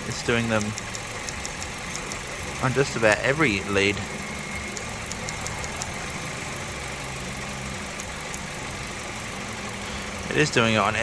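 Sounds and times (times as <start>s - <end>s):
faint high ticks: 0.0s - 2.3s, 4.6s - 6.2s, 7.8s - 8.5s
car engine idling with misfire: 0.0s - 11.0s.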